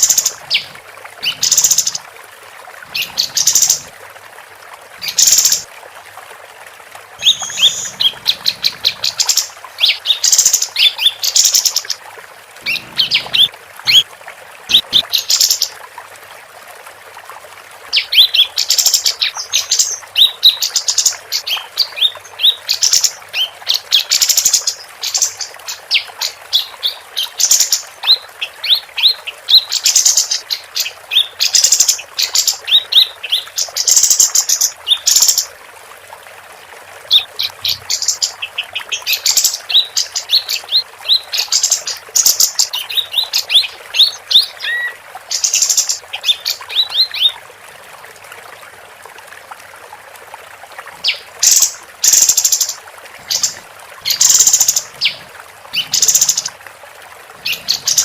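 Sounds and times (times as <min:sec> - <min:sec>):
bird chirping rapidly: 0:07.2 - 0:11.8.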